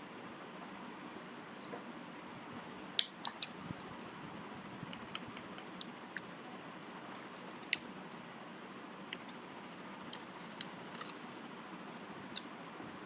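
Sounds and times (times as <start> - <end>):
steady low hiss: 0.0 - 13.0
small clicks and ticks: 3.0 - 6.3.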